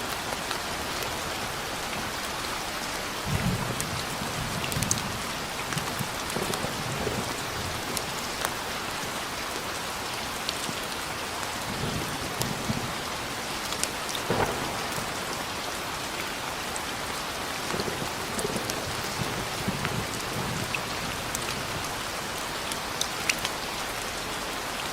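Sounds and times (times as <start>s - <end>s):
heavy rain falling: 0.0s - 24.9s
raindrops ticking on a surface: 0.0s - 24.9s
low thunder rumbling: 3.2s - 8.4s, 14.2s - 15.8s, 17.7s - 22.2s.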